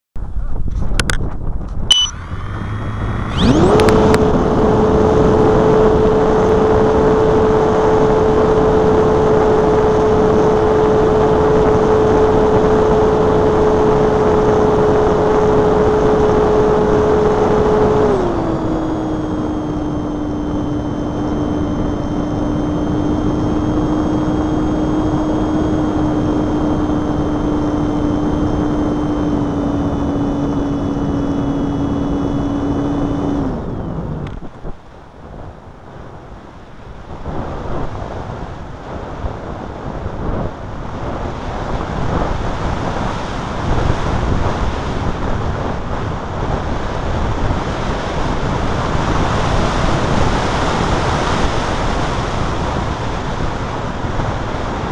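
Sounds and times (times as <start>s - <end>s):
electric motor whine: 1.7s - 36.1s, 36.9s - 54.9s
rushing air: 1.9s - 5.6s.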